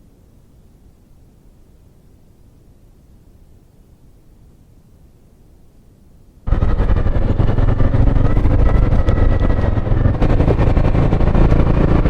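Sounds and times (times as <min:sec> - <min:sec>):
faint hiss: 0:00.0 - 0:06.5
vehicle engine rumbling: 0:06.5 - 0:12.0.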